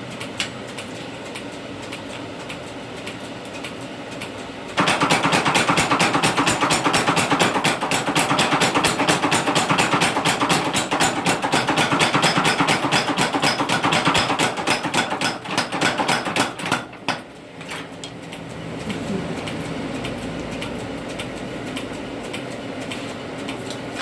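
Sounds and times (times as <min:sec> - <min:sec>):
power hammer pounding steel: 0:04.8 - 0:17.3.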